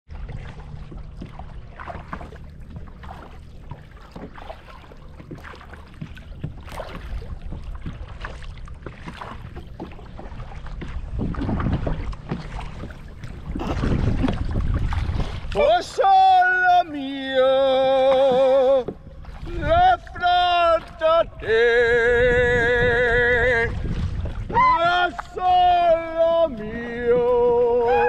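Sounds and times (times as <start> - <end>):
paddles splashing in water: 0.1 - 28.0
wind buffeting microphone: 9.1 - 16.1, 18.9 - 28.0.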